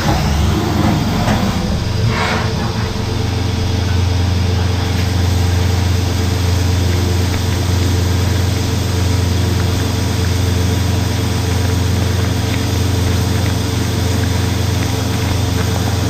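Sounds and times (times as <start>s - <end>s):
engine idling hum: 0.0s - 16.0s.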